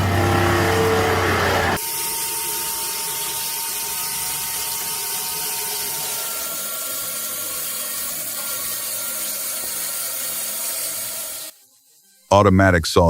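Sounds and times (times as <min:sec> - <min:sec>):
faint whining tones: 0:00.0 - 0:07.6
machine hissing: 0:00.0 - 0:11.7.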